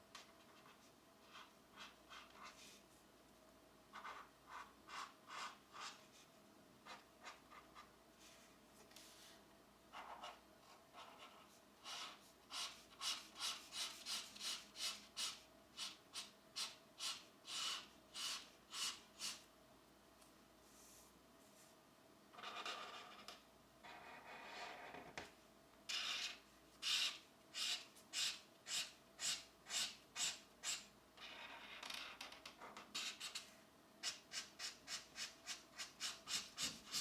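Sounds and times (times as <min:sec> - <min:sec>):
pencil scratching on paper: 0:00.5 - 0:02.8, 0:03.9 - 0:06.2, 0:09.9 - 0:19.4, 0:23.8 - 0:24.9, 0:34.0 - 0:37.0.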